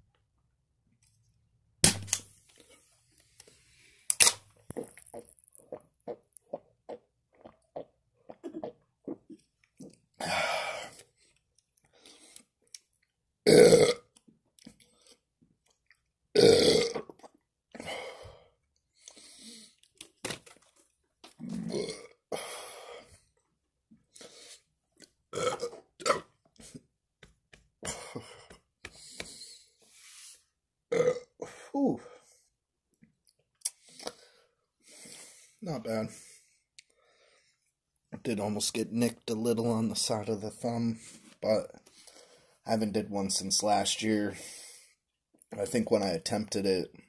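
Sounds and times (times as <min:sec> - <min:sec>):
can punched open crack: 0:04.1 - 0:05.1
quick gulps: 0:04.7 - 0:10.0
man burping: 0:08.3 - 0:09.4, 0:13.5 - 0:14.1, 0:16.4 - 0:18.1, 0:21.4 - 0:22.6, 0:25.3 - 0:26.4, 0:30.9 - 0:32.0.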